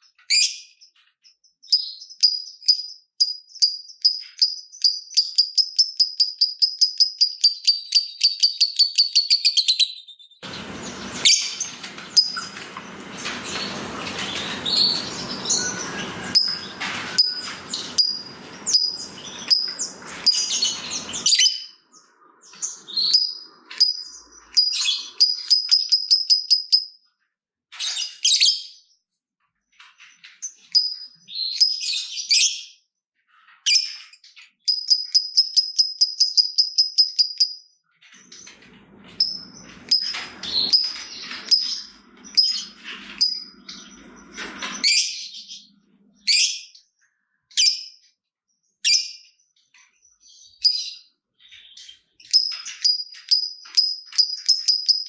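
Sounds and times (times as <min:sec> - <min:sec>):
steady background noise: 0:10.4 - 0:21.2
scattered bird chirps: 0:10.4 - 0:26.8
bird chirping rapidly: 0:10.4 - 0:26.9.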